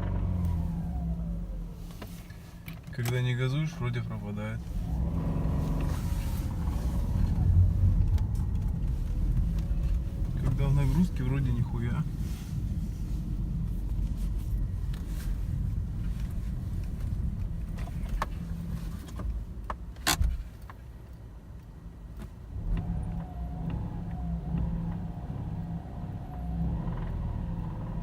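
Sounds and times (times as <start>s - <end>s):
car engine idling: 0.0s - 21.1s.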